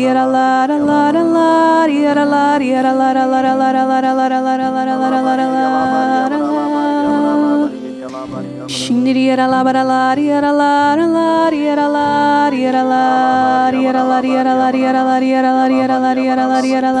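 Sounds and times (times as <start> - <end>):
chant-like worship singing: 0.0 - 10.5, 11.4 - 17.0
sustained chord: 13.1 - 17.0.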